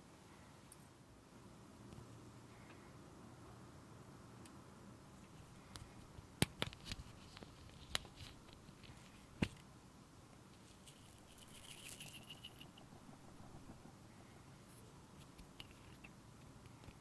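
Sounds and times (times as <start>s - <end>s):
soft scratchy rustle: 6.7s - 9.4s, 10.5s - 16.1s.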